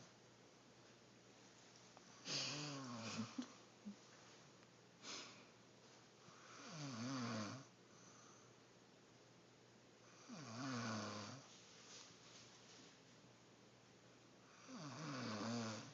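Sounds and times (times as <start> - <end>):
soft breath: 2.1 - 5.6, 7.8 - 8.6
woman snoring: 2.2 - 3.4, 6.4 - 7.7, 10.1 - 11.5, 14.5 - 15.9.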